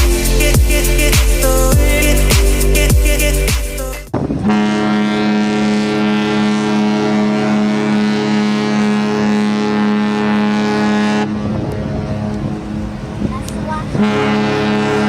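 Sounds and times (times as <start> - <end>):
deep ship horn blast: 4.1 - 13.2, 13.9 - 15.0.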